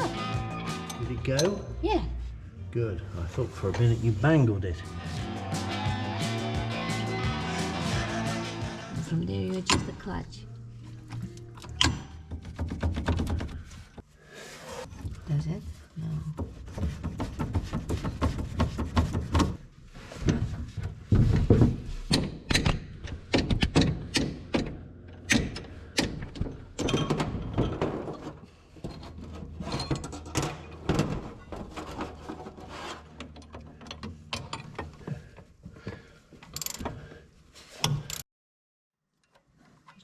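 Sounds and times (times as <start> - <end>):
metallic clicks and clanks of tools: 0.8 - 1.7, 11.1 - 13.5, 22.1 - 27.8, 33.1 - 35.0, 36.4 - 37.1, 37.8 - 38.2.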